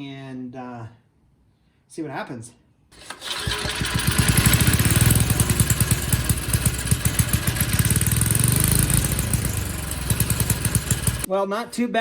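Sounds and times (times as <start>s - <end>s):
small engine running: 3.0s - 11.3s.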